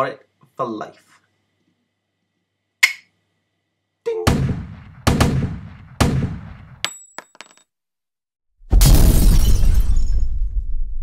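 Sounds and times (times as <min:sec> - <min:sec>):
gunshot bangs: 0:04.3 - 0:06.8.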